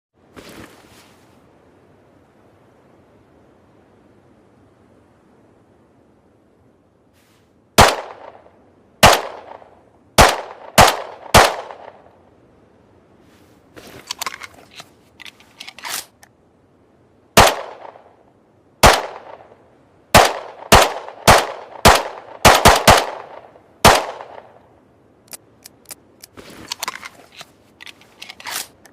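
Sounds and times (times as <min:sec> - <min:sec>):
pistol shots with echo: 0:07.8 - 0:08.4, 0:09.0 - 0:12.0, 0:17.4 - 0:18.1, 0:18.8 - 0:19.5, 0:20.1 - 0:24.5
small clicks: 0:25.2 - 0:28.9.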